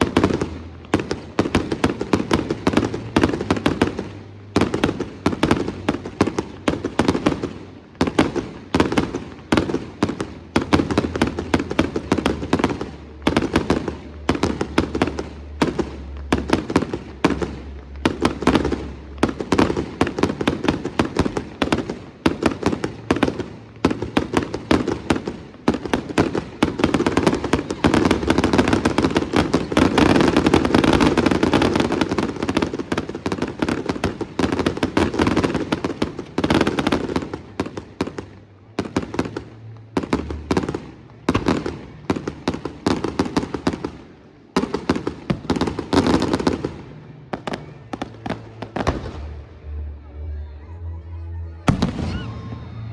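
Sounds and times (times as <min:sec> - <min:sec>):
fireworks bangs and crackling: 0:00.0 - 0:50.0, 0:51.6 - 0:52.9.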